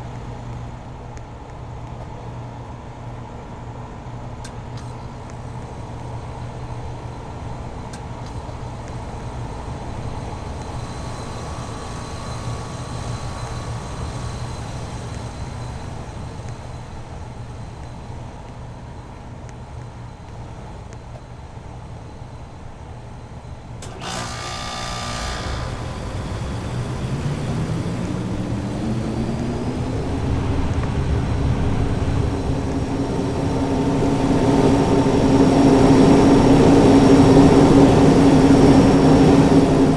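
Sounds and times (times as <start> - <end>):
air conditioner unit humming: 0.0 - 39.9
rising tone: 25.1 - 39.9.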